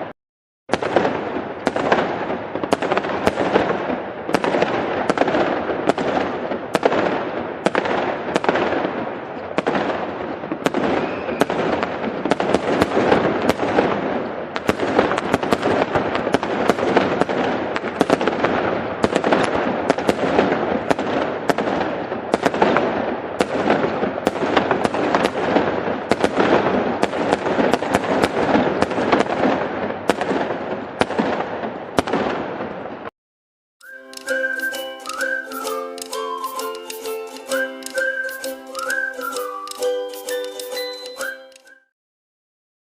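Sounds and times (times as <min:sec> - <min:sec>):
fireworks crackling: 0:00.7 - 0:32.9, 0:33.8 - 0:41.8
fireworks bangs: 0:00.7 - 0:33.1
music: 0:33.8 - 0:41.9.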